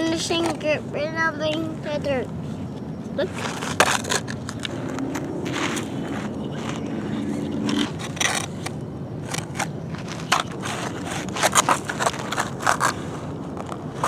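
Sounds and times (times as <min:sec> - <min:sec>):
low steady hum: 0:00.0 - 0:14.0
toy vehicles scraping through dirt: 0:03.2 - 0:14.0.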